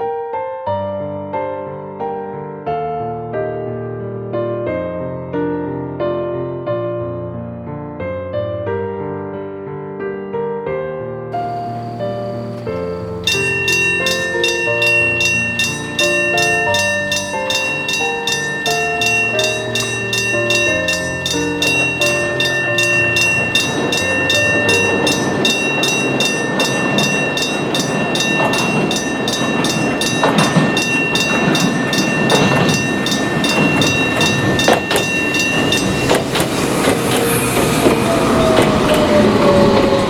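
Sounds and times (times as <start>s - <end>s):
level crossing bell ringing: 11.4s - 37.4s
train wheels clattering: 11.4s - 40.0s
train whine: 11.4s - 40.0s.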